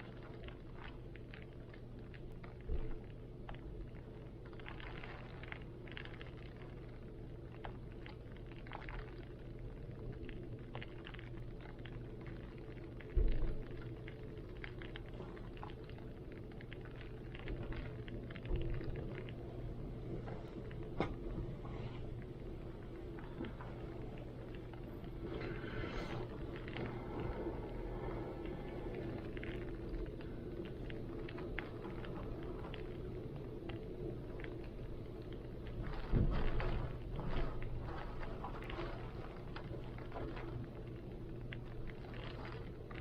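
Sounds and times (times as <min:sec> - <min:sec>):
rain pattering: 0:00.0 - 0:43.0
low wind rumble: 0:09.6 - 0:43.0.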